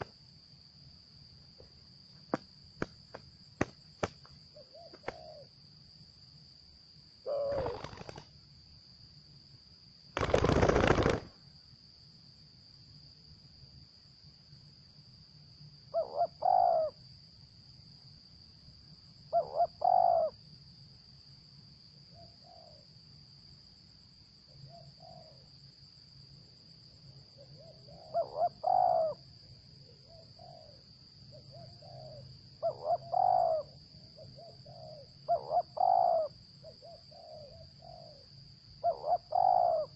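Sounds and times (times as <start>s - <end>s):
doves cooing: 4.0s - 5.5s, 7.2s - 8.2s, 10.2s - 11.3s, 16.0s - 17.0s, 19.4s - 20.3s, 27.6s - 29.2s, 31.4s - 38.2s, 38.8s - 39.9s
wings flapping: 4.9s - 5.3s, 7.4s - 8.3s, 10.2s - 11.4s.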